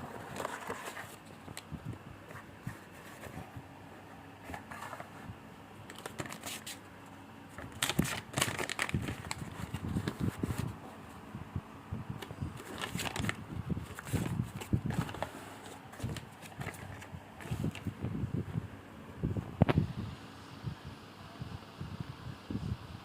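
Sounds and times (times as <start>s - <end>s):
packaging crinkling and rustling: 0.1s - 1.7s, 5.8s - 6.9s, 7.5s - 10.8s, 12.2s - 17.9s.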